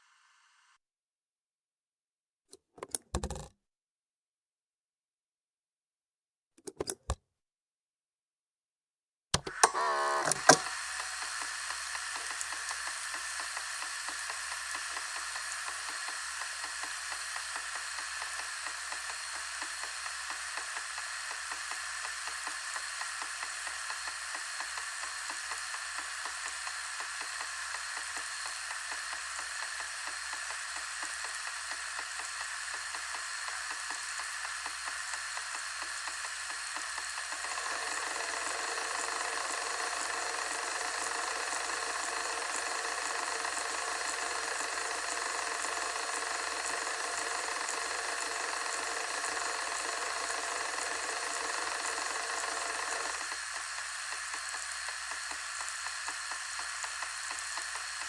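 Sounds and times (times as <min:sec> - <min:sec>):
low mechanical whirring: 0:00.0 - 0:00.8, 0:09.4 - 0:58.0
tape hiss with crackling static: 0:00.0 - 0:00.8.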